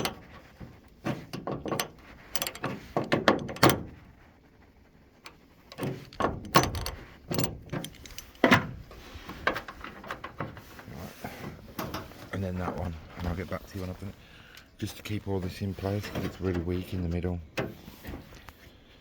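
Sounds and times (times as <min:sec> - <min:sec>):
hand tools clicking on metal: 0:01.3 - 0:03.8, 0:05.3 - 0:08.5.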